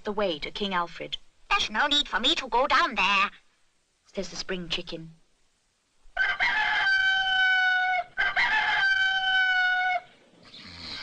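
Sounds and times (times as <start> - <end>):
rooster crowing: 6.2 - 10.2.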